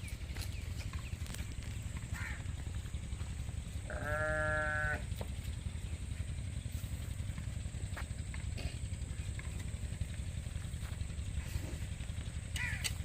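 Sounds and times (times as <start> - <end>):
low rumble: 0.0 - 13.0
animal bleat: 3.8 - 5.2.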